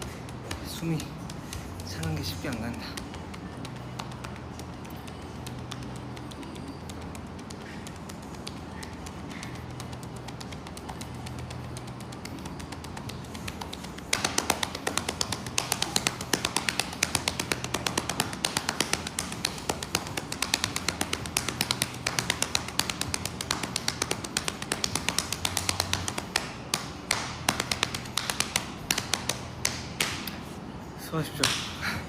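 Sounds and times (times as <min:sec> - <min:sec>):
hands slapping on thighs: 0:00.0 - 0:30.4, 0:31.4 - 0:31.8.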